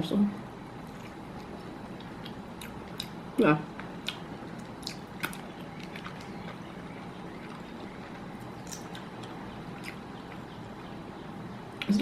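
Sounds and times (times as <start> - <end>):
low room hum: 0.0 - 12.0
wet mouth clicks of chewing: 4.0 - 6.6, 7.4 - 10.5.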